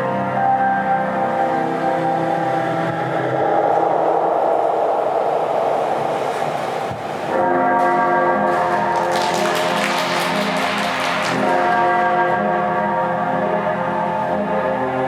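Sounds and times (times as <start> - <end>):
music over arena speakers: 6.2 - 15.0.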